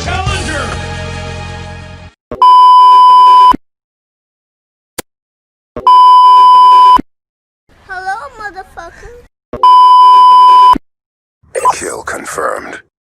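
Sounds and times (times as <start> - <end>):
censor bleep tone: 5.8 - 7.0, 9.6 - 10.8.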